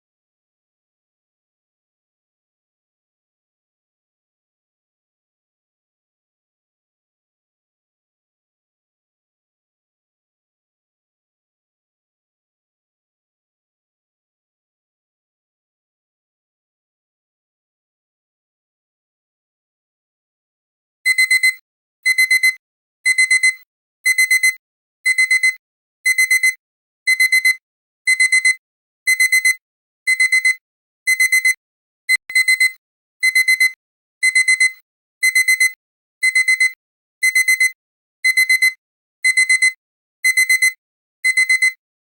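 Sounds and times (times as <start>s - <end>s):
digital alarm clock beeping: 21.1s - 41.8s.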